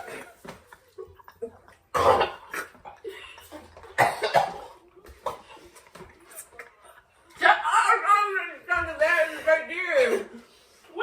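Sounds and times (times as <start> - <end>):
person coughing: 1.9 - 2.8, 3.9 - 5.4.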